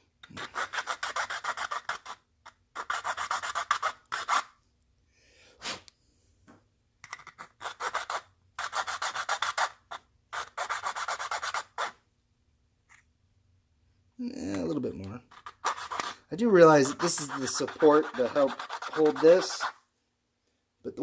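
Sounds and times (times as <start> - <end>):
hand file rasping metal: 0.3 - 2.2, 7.4 - 9.8, 10.4 - 12.0, 15.3 - 19.8.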